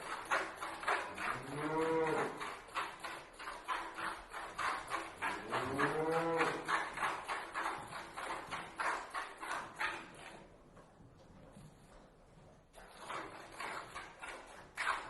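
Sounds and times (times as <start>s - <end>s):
milk squirting into a pail: 0.0s - 10.5s, 12.7s - 15.0s
cow mooing: 1.2s - 2.4s, 5.4s - 6.7s.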